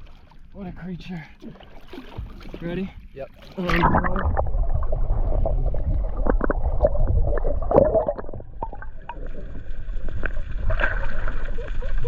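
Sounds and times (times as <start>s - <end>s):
water sloshing and splashing: 0.0s - 12.0s
low rumble: 3.7s - 12.0s.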